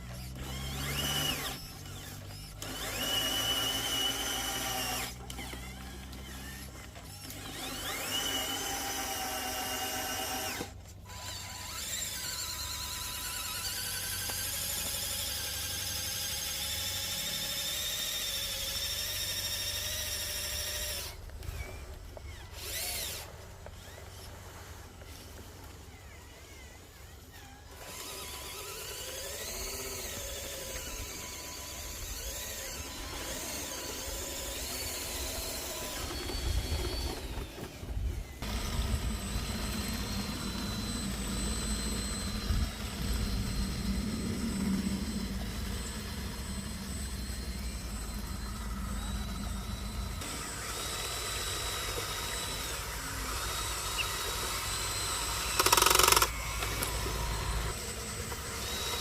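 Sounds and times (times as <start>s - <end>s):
small motors whining: 0.0s - 59.0s
low engine-like hum: 28.4s - 59.0s
thin high whine: 38.4s - 50.6s.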